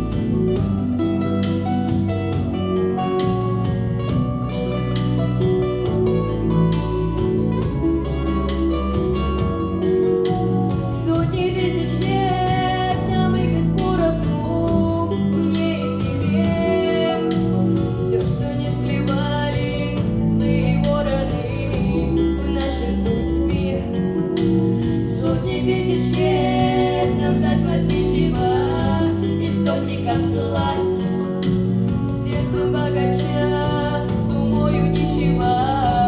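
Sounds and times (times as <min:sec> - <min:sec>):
acoustic guitar: 0:00.0 - 0:36.0
girls singing: 0:10.9 - 0:24.0, 0:25.0 - 0:36.0.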